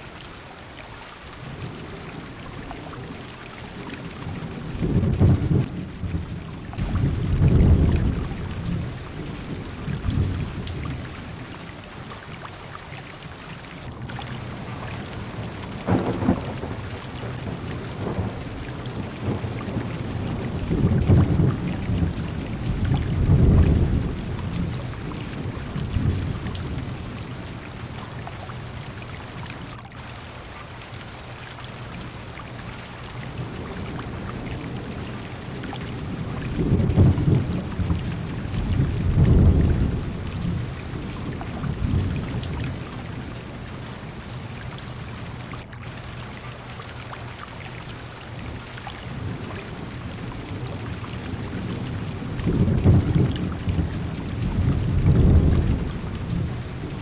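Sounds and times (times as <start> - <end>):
heavy rain on car window: 0.0 - 57.0
thunder rumbling: 4.0 - 11.7, 14.1 - 29.3, 33.3 - 44.3, 48.5 - 57.0.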